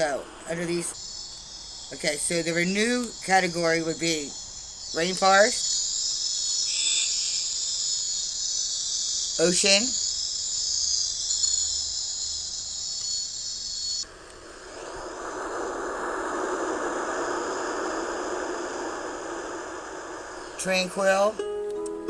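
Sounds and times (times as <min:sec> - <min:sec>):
ocean surf: 0:00.0 - 0:01.0, 0:14.0 - 0:21.5
insect chirring: 0:00.0 - 0:22.0.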